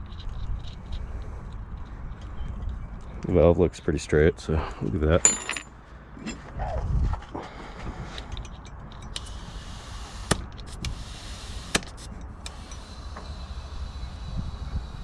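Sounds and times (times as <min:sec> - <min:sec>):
air hissing into tyre: 0:09.2 - 0:15.0.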